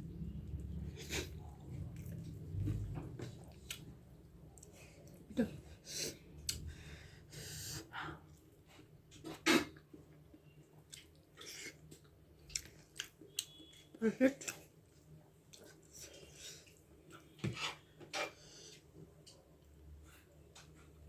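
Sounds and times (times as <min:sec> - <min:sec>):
chewing and wet mouth smacks: 0:10.7 - 0:15.9.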